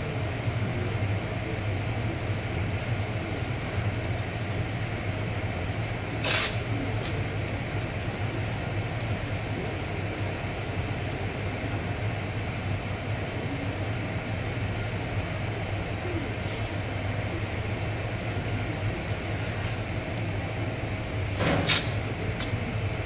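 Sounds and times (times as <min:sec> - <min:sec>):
workshop machinery hum: 0:00.0 - 0:23.0
short sharp hiss: 0:06.2 - 0:06.6.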